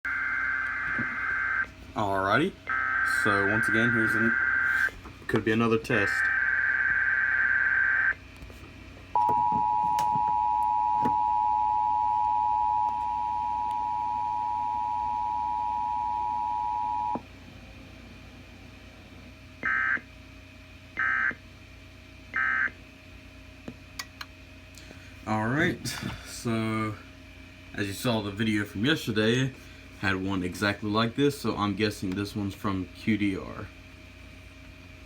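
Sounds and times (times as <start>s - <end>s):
two-tone attention signal: 9.2s - 17.2s.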